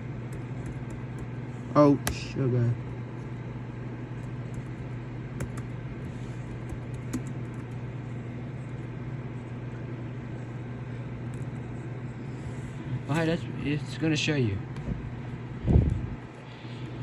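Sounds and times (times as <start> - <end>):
steady low hum: 0.0 - 17.0
keystrokes on computer keyboard: 0.2 - 1.3, 4.2 - 7.8, 11.2 - 11.7.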